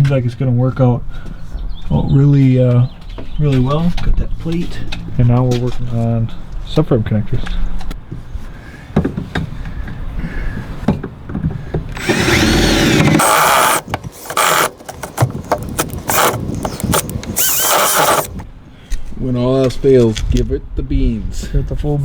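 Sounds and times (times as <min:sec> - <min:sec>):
power drill boring into metal: 0:12.0 - 0:18.4.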